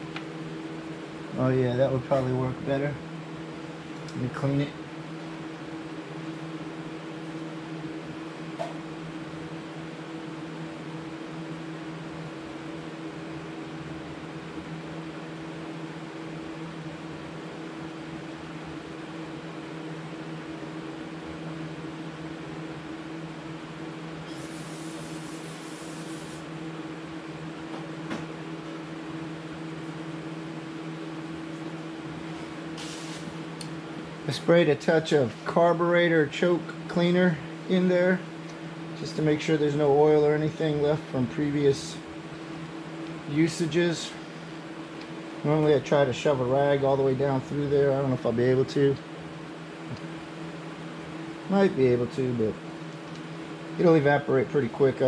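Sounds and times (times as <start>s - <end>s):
machine hum: 0.0s - 55.0s
aerosol spray hiss: 24.3s - 26.5s, 32.8s - 33.4s.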